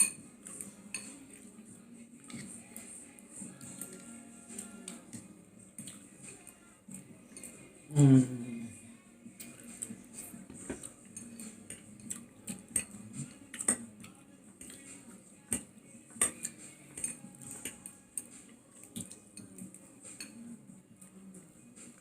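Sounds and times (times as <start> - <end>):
cutlery clinking on a plate: 0.0 - 1.4, 12.5 - 13.9, 15.5 - 20.5.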